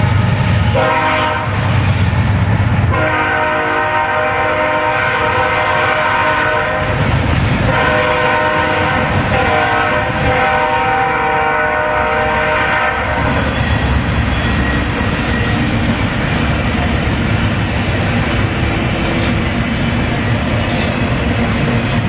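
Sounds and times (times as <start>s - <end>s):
train rumbling past: 0.0s - 22.0s
locomotive air horn blasts: 0.7s - 1.6s, 2.9s - 7.0s, 7.7s - 14.5s.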